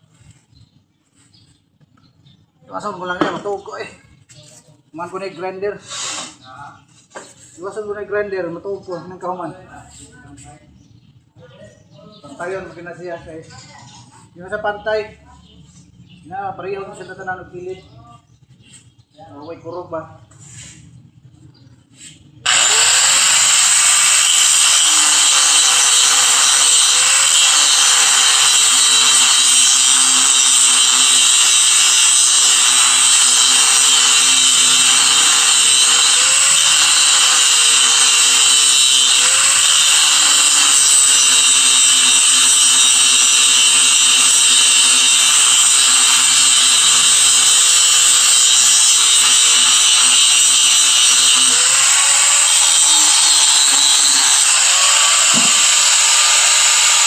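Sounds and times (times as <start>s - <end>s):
angle grinder grinding: 22.4s - 57.0s.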